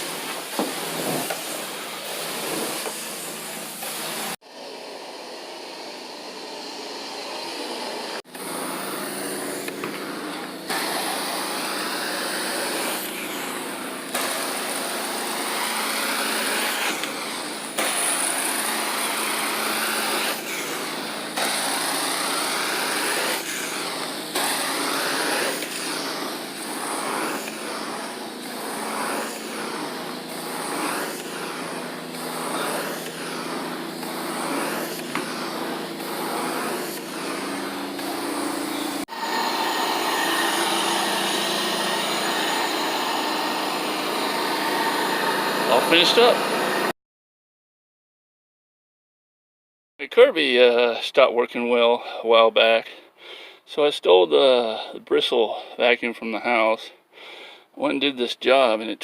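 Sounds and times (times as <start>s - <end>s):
vacuum motor with suction hiss: 0.0s - 46.9s.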